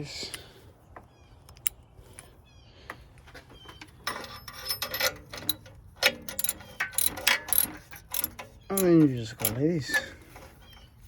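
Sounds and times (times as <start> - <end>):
hand tools clicking and tapping: 3.7 - 10.9
ratchet wrench clicking: 4.4 - 10.1.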